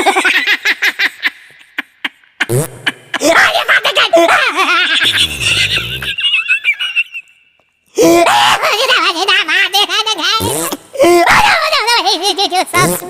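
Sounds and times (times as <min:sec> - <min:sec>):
high-pitched cartoon voices laughing: 0:00.0 - 0:07.4, 0:08.0 - 0:13.0
fart sound effect: 0:05.0 - 0:06.2.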